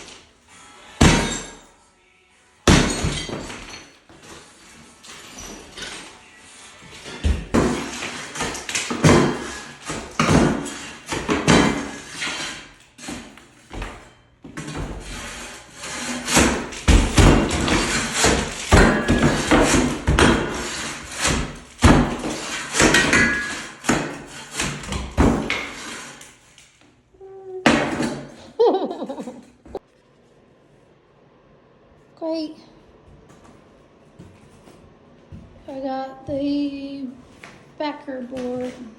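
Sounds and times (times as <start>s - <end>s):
hammer breaking ceramic tile: 1.0s - 1.6s, 2.7s - 3.9s, 7.5s - 12.6s, 16.0s - 26.0s.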